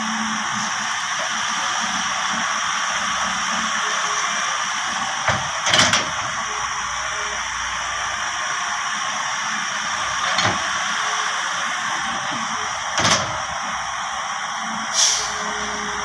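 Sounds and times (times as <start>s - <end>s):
excavator machine noise: 0.0s - 16.0s.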